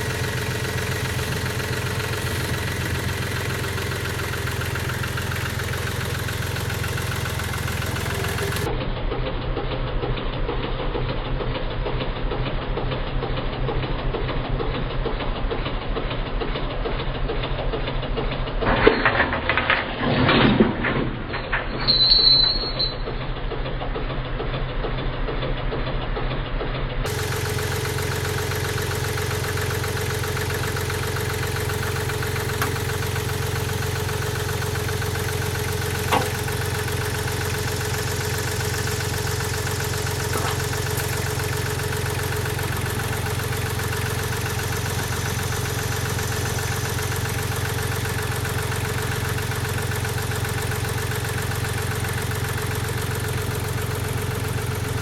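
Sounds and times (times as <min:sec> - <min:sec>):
engine idling: 0:00.0 - 0:55.0.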